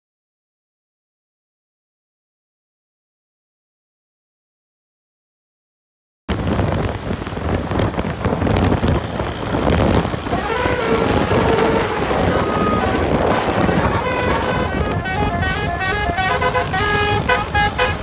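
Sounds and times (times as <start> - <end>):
traffic noise: 6.3 - 18.0
wind noise on microphone: 6.3 - 18.0
bus multi-tone horn: 10.1 - 18.0.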